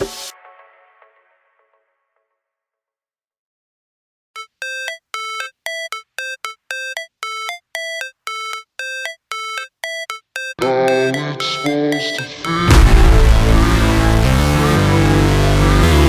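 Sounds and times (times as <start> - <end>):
timer alarm beeping: 4.4 - 13.4
loud music: 10.9 - 16.0.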